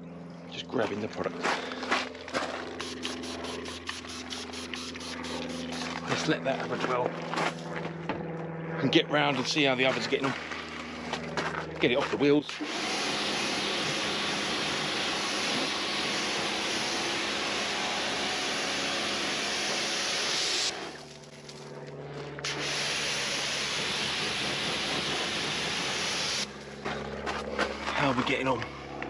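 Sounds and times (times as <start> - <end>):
pressure washer spraying water: 2.8 - 6.0, 12.5 - 21.1, 22.4 - 26.5.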